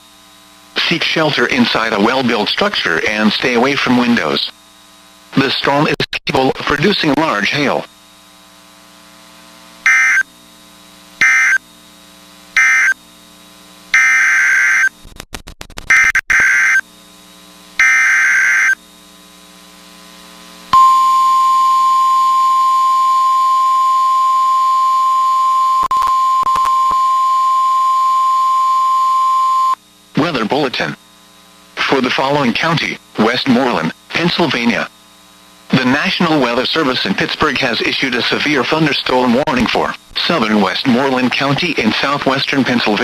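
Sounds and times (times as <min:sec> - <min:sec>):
steady warning alarm tone: 0:09.8 - 0:10.4, 0:11.2 - 0:11.7, 0:12.6 - 0:13.0, 0:13.9 - 0:15.0, 0:15.9 - 0:16.9, 0:17.8 - 0:18.8, 0:20.7 - 0:29.8
buzzy data bursts: 0:15.9 - 0:16.9, 0:17.8 - 0:18.9.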